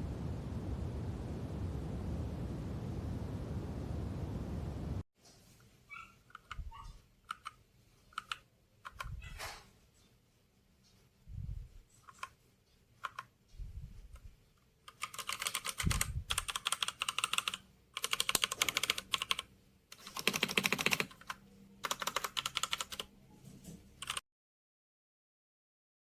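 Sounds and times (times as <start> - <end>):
typing on mechanical keyboard: 7.3 - 9.1, 12.0 - 12.4, 13.0 - 13.3, 14.9 - 23.1, 24.0 - 24.2.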